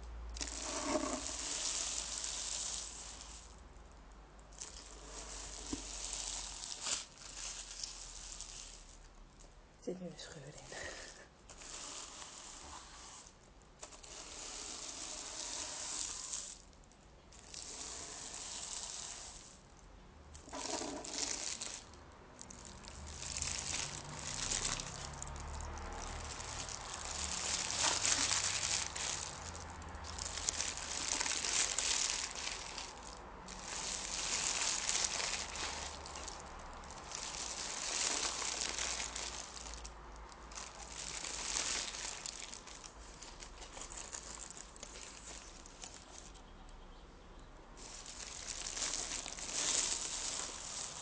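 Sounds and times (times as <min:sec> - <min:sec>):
paper crinkling and rustling: 0:04.6 - 0:09.1, 0:20.4 - 0:46.5, 0:47.8 - 0:51.0.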